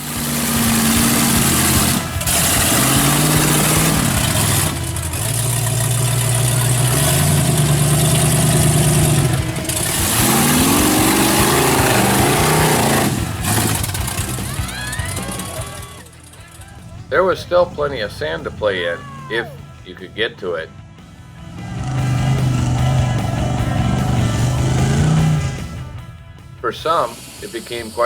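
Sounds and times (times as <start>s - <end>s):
truck engines revving hard: 0.0s - 28.0s
loud steady hiss: 26.8s - 28.0s.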